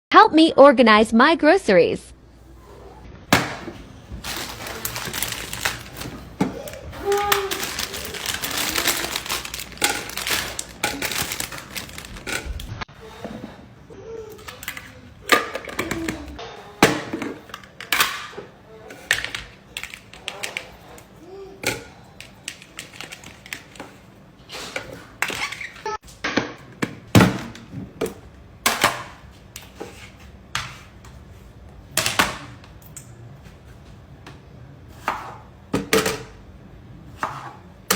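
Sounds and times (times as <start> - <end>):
plastic bins clacking and knocking: 3.3 - 12.8, 14.3 - 20.9, 26.6 - 29.2
rustling: 3.7 - 12.8.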